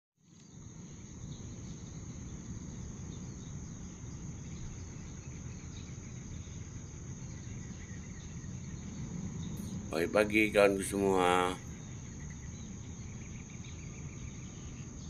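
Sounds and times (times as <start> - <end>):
faint chirps: 9.5 - 11.7.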